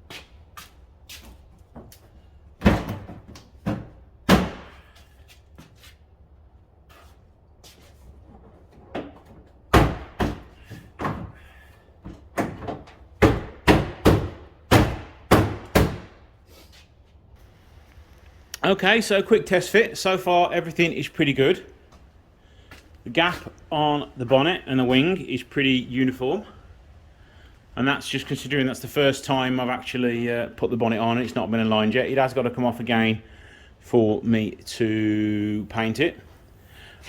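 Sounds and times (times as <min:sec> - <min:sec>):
metallic knocks on car panels: 0:02.6 - 0:04.8, 0:09.0 - 0:11.4, 0:12.1 - 0:16.2.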